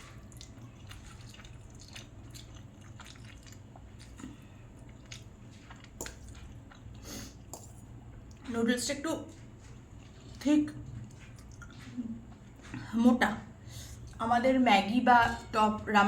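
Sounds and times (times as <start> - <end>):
person chewing noodles: 0.0 - 8.5, 9.3 - 12.9
low steady hum: 0.0 - 16.0.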